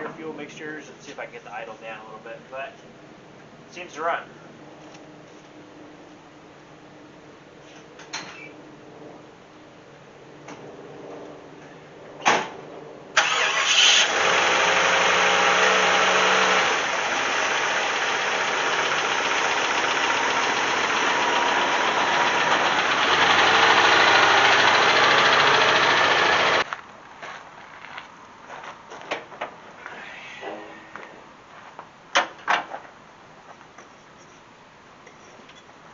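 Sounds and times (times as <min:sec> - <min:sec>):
engine starting and idling: 0:13.2 - 0:26.6.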